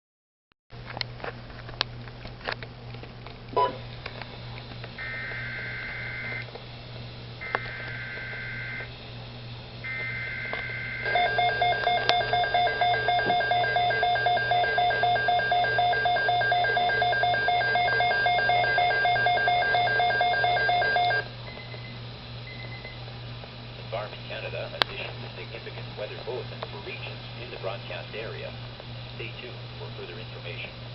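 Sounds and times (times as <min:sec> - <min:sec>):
steady low hum: 0:00.8 - 0:30.9
pulsing alarm tone: 0:05.0 - 0:06.4, 0:07.4 - 0:08.9, 0:09.8 - 0:21.6.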